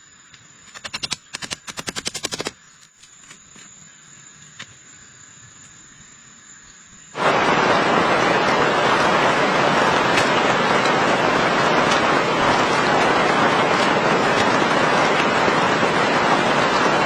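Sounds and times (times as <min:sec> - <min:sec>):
faint high whine: 0:00.0 - 0:01.7, 0:02.5 - 0:17.0
heavy rain: 0:07.2 - 0:17.0.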